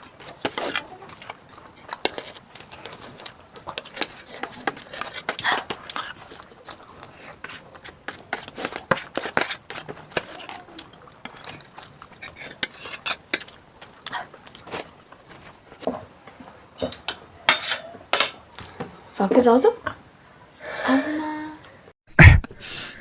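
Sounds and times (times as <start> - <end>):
cutlery clinking against plates: 15.8 - 18.6.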